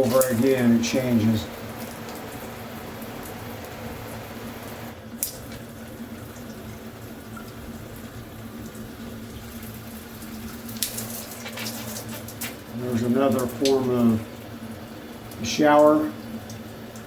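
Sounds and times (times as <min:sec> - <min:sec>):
water spraying from shower head: 0:00.0 - 0:05.0, 0:10.6 - 0:14.4.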